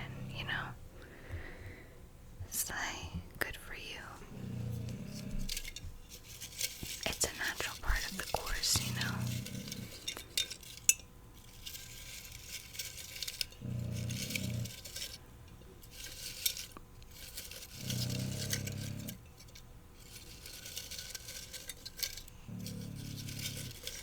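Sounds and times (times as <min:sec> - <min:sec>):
puppy snoring: 0:00.0 - 0:00.8, 0:02.5 - 0:05.8, 0:07.0 - 0:10.2, 0:13.6 - 0:15.0, 0:17.7 - 0:19.2, 0:22.4 - 0:24.0
jar clinking and rattling: 0:04.9 - 0:24.0.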